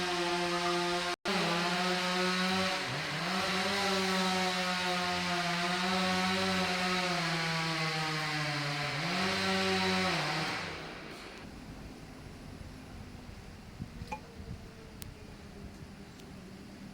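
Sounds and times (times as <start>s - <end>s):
chainsaw cutting a tree: 0.0s - 11.4s.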